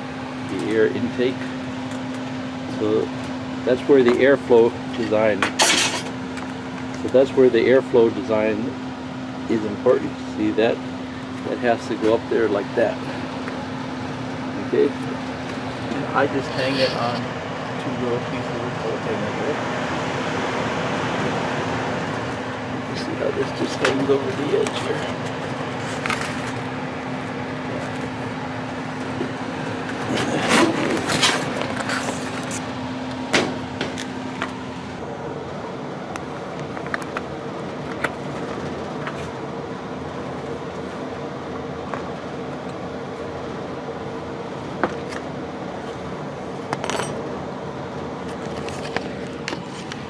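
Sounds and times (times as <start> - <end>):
machine hum: 0.0 - 50.0
filter scraping and rustling: 29.8 - 32.8.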